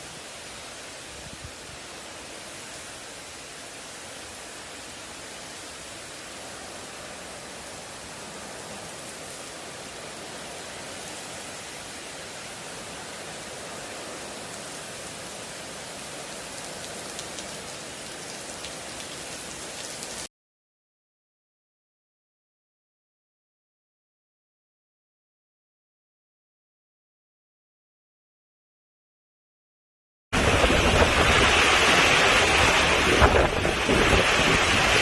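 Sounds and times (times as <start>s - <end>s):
heavy rain and wind: 0.0s - 20.3s, 30.4s - 35.0s.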